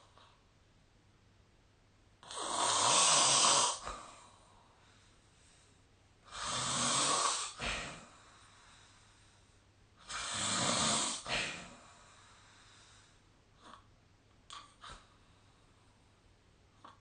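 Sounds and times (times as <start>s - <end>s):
person snoring: 2.2s - 4.2s, 6.3s - 8.1s, 10.0s - 11.9s
quiet breathing: 2.2s - 17.0s.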